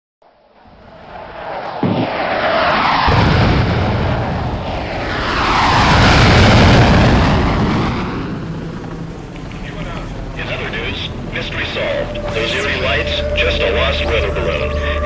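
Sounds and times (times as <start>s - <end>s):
sound-effect rumble: 0.6s - 15.0s
jet-like whoosh: 0.8s - 8.5s.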